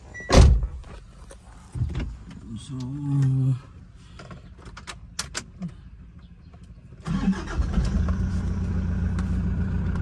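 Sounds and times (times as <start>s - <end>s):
van engine starting and idling: 3.0s - 10.0s.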